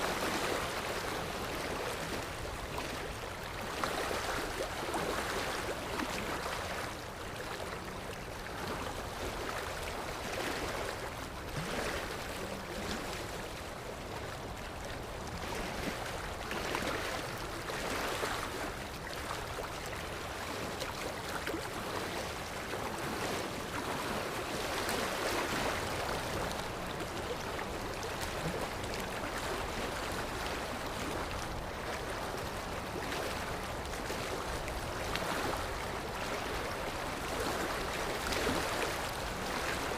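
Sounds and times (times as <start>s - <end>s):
waves washing in and drawing back: 0.0s - 39.9s.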